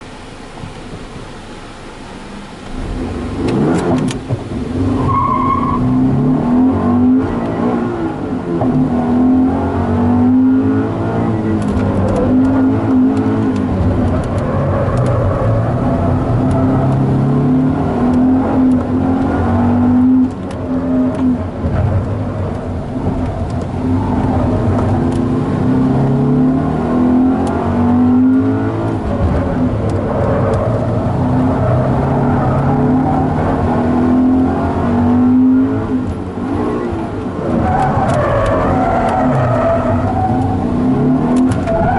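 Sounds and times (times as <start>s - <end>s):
car engine revving: 2.4s - 41.9s.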